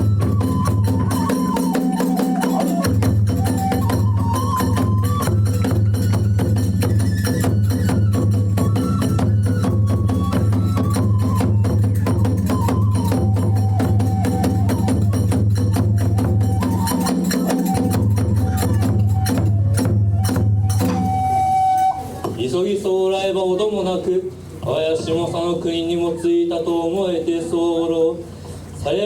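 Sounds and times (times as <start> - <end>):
rapid drum beating: 0.0 - 21.2
hand cymbals beating: 0.0 - 21.8
high bamboo flute melody: 0.0 - 22.6.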